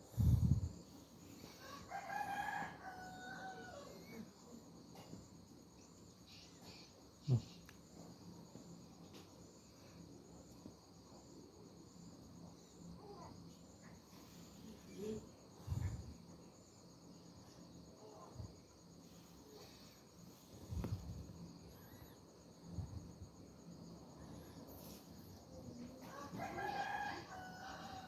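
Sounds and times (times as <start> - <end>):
insects chirring: 0.0 - 28.0
rooster crowing: 1.6 - 4.2, 26.0 - 28.0.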